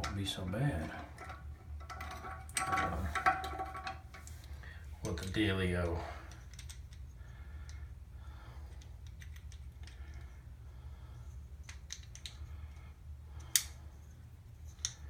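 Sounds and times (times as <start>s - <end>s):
light clicks and faint scraping: 0.0s - 5.4s, 8.5s - 15.0s
low steady hum: 0.0s - 15.0s.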